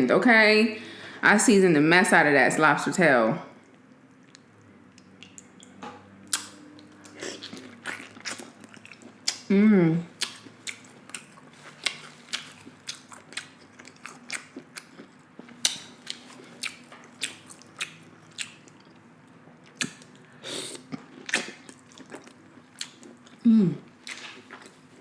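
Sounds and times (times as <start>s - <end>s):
chewing with wet mouth clicks: 3.6s - 9.5s, 10.2s - 23.4s.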